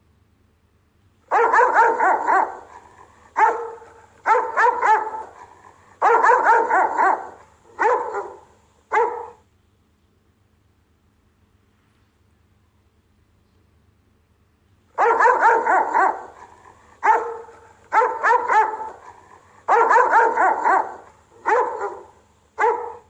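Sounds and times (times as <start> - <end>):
dog barking deeply: 1.3 - 9.4, 15.0 - 23.0.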